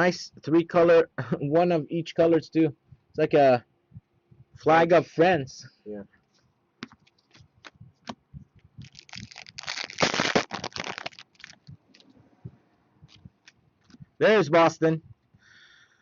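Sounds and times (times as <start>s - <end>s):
cards clicking and tapping: 6.8s - 8.2s
packaging rustling and scraping: 8.8s - 12.1s.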